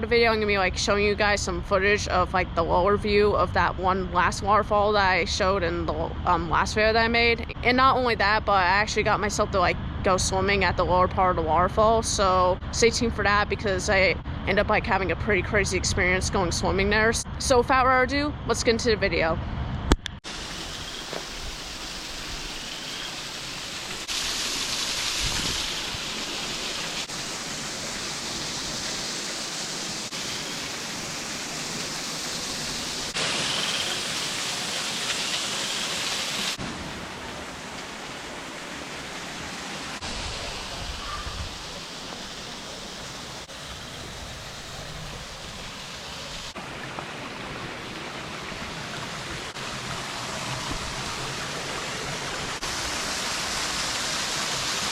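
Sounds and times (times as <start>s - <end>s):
waterfall rushing: 20.3s - 54.9s.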